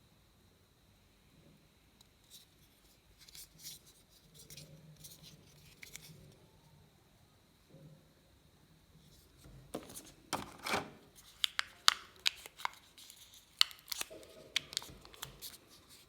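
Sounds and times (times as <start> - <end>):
hands handling phone packaging: 3.2 - 6.3, 9.8 - 16.0.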